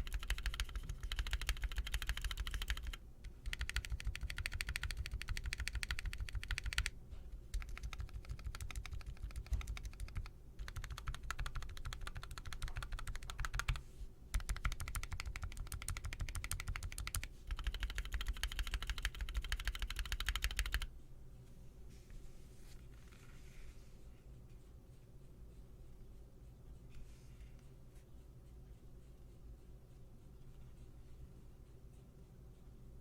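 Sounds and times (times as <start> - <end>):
mechanical keyboard typing: 0.0 - 6.9, 7.5 - 20.9.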